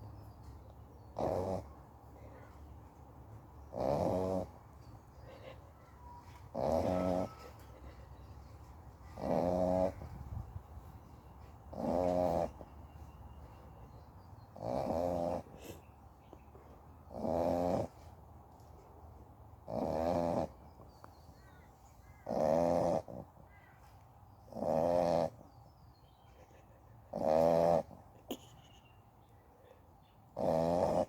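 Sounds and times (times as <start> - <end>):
dog snoring: 1.2 - 1.7, 3.7 - 4.6, 6.5 - 7.5, 9.1 - 10.4, 11.7 - 12.7, 14.5 - 15.8, 17.1 - 18.0, 19.6 - 20.6, 22.2 - 23.3, 24.5 - 25.5, 27.1 - 28.0, 30.4 - 31.0.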